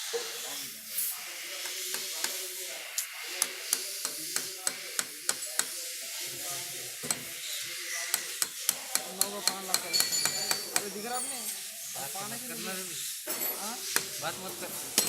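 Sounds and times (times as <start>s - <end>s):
steady hiss: 10.6s - 15.0s.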